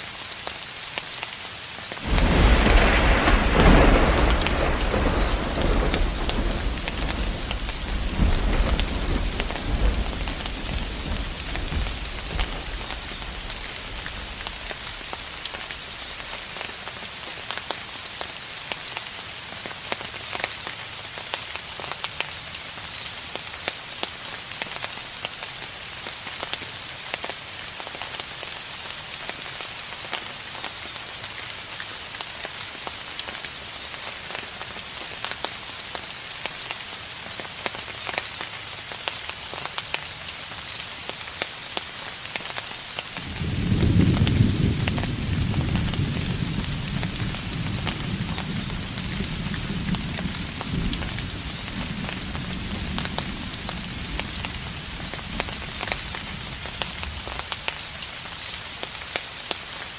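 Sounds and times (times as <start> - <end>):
steady rain falling: 0.0 - 59.9
distant thunder rumble: 2.0 - 15.8, 43.2 - 57.4.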